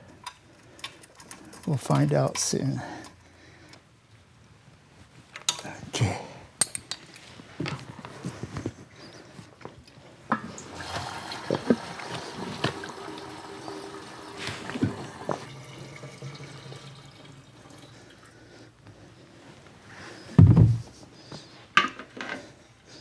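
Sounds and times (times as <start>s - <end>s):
liquid trickling and dripping: 10.4s - 18.6s.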